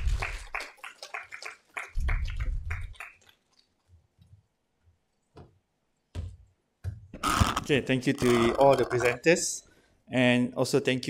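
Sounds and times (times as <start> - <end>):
audience clapping: 0.0 - 3.5.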